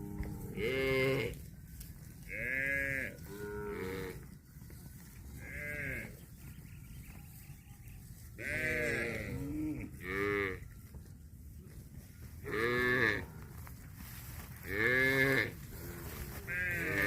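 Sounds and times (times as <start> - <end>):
cattle mooing: 2.4 - 4.2.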